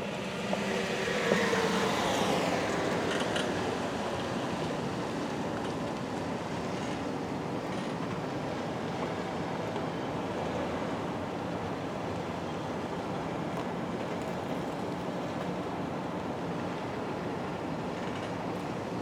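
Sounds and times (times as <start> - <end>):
road and engine noise in car: 0.0 - 6.9.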